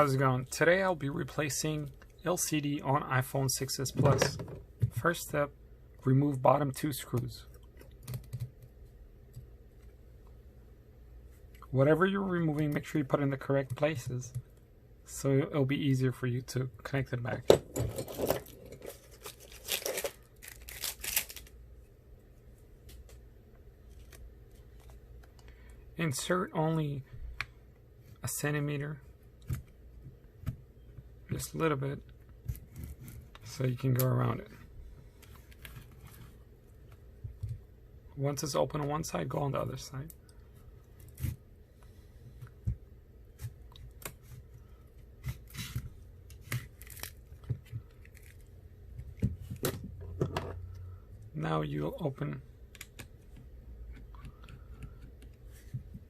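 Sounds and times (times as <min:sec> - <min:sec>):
tools rustling and scraping: 0:17.4 - 0:20.0.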